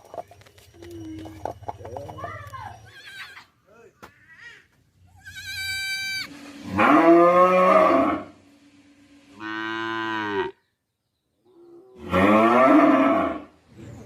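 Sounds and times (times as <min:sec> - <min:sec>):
cattle mooing: 0:06.6 - 0:08.3, 0:09.4 - 0:10.6, 0:11.6 - 0:13.5.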